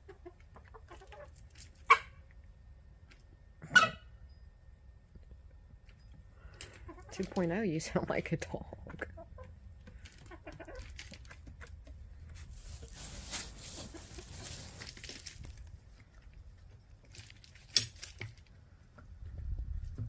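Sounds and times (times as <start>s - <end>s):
rustling and crinkling: 9.9s - 18.6s.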